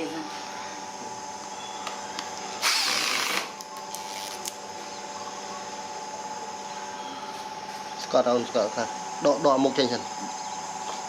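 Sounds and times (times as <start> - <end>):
loud harsh burst of noise: 2.6 - 3.6
power tool motor running: 2.6 - 4.4.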